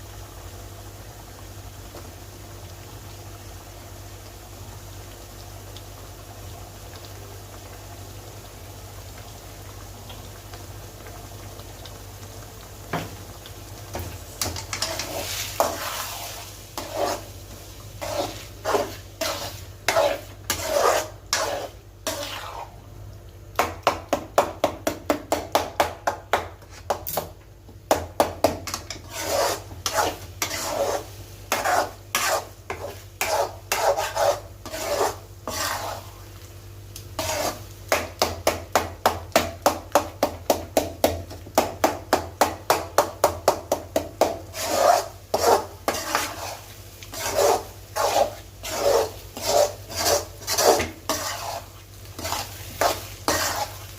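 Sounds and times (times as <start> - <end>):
light sizzle: 0.0 - 53.9
spatula scraping frying pan: 13.9 - 22.8, 28.2 - 36.3, 37.2 - 40.3, 42.1 - 53.9.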